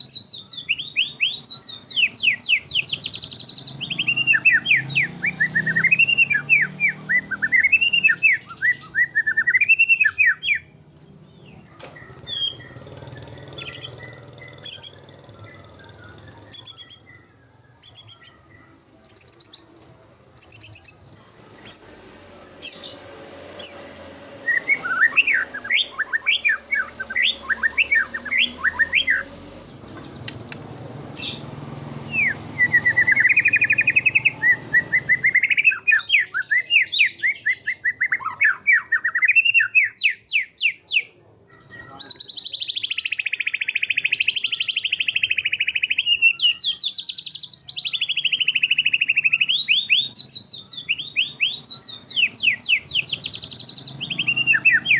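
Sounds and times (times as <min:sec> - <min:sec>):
songbird singing varied song: 0:00.0 - 0:54.9.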